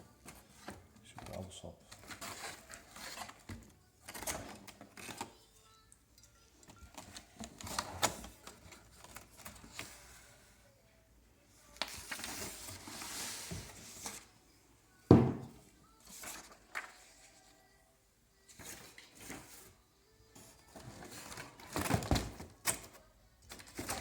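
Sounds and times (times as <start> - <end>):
bottles clicking and tapping: 15.1 - 15.6
heavy knock: 15.1 - 15.6.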